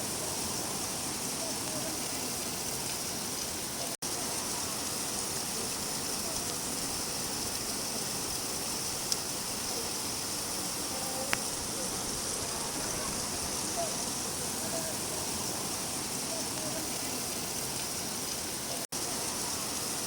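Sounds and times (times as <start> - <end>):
steady rain: 0.0 - 20.0
sharp drip ticks: 4.9 - 10.5, 16.0 - 19.1.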